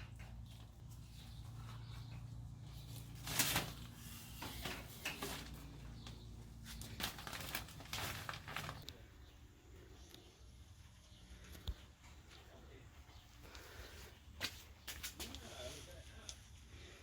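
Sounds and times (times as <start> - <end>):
scrapes rustles and knocks: 0.0 - 6.1.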